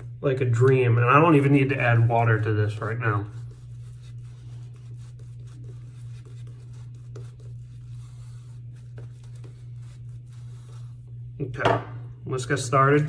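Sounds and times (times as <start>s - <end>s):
shaving brush scratching on skin: 1.2s - 11.2s.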